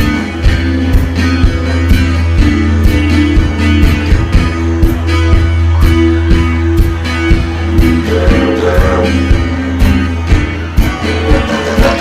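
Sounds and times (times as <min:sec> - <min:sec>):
drum beat: 0:00.0 - 0:12.0
guitar: 0:00.0 - 0:12.0
didgeridoo drone: 0:07.8 - 0:09.6.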